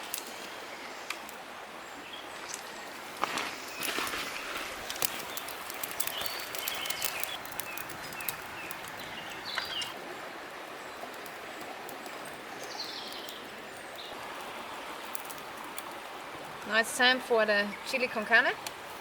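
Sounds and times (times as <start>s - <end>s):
river flowing: 0.0s - 19.0s.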